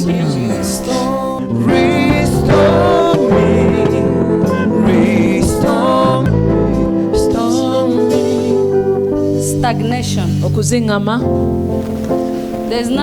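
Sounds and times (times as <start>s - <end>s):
voices singing: 0.0s - 9.2s
guitar: 0.0s - 13.0s.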